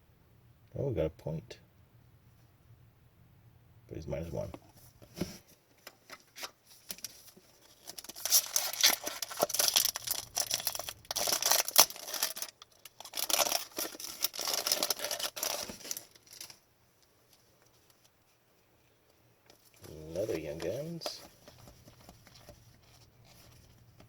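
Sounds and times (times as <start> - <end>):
cards rustling and clicking: 5.2 - 16.6, 19.5 - 24.0
foil wrapper tearing and crinkling: 6.4 - 16.6.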